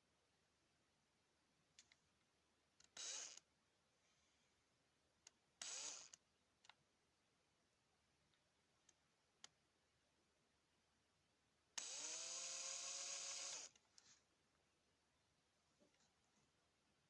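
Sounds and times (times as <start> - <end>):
small power tool spinning: 2.8 - 3.4, 5.6 - 6.2, 11.8 - 13.8.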